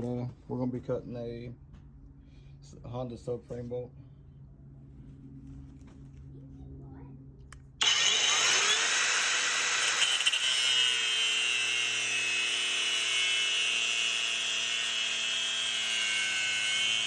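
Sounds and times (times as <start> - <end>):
angle grinder cutting bolt: 7.8 - 17.0.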